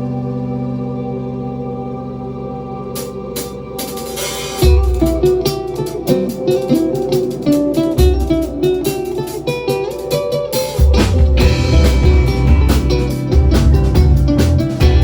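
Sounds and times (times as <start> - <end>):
guitar picking melody: 0.0 - 15.0
deep bass notes: 10.9 - 15.0.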